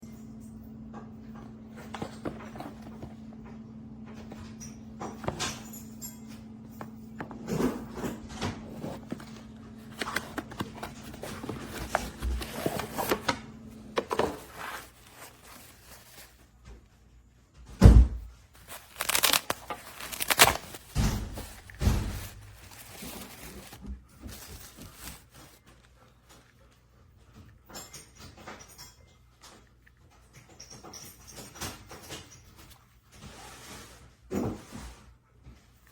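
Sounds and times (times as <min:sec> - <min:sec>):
handling clicks and rustles: 0:01.3 - 0:16.9, 0:18.5 - 0:26.7.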